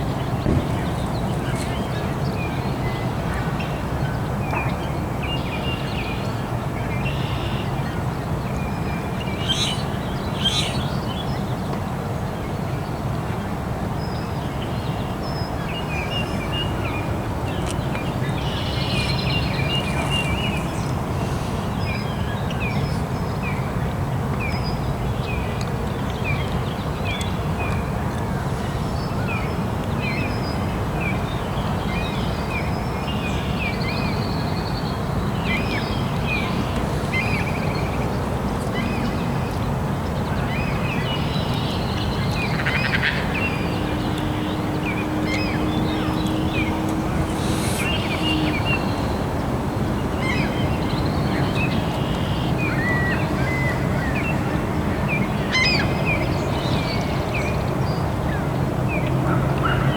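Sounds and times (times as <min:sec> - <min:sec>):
birds chirping: 0:07.0 - 0:11.6, 0:15.5 - 0:23.0, 0:26.3 - 0:57.8.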